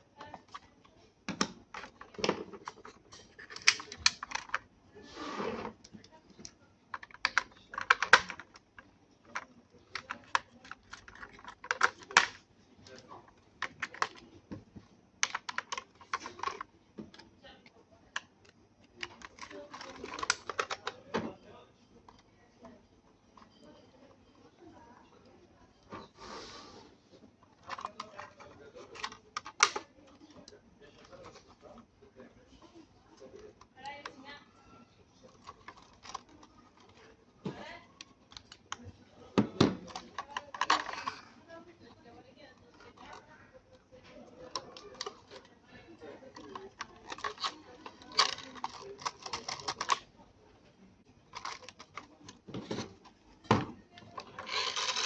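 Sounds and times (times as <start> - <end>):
small plastic parts clicking: 1.4 - 4.7, 6.0 - 13.0, 15.2 - 17.3, 18.1 - 21.0, 27.6 - 29.8, 35.3 - 37.0, 39.8 - 41.2, 46.3 - 50.1, 51.3 - 52.4.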